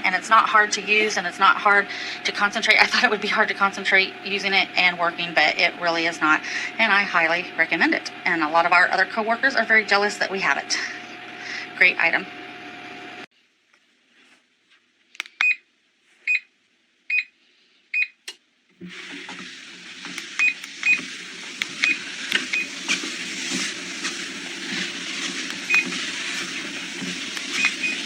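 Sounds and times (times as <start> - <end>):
treadmill motor and belt humming: 0.0 - 13.3, 18.8 - 28.0
treadmill control beeping: 15.4 - 15.6, 17.1 - 17.3, 18.0 - 18.2, 20.1 - 22.9, 25.4 - 26.0, 27.3 - 28.0.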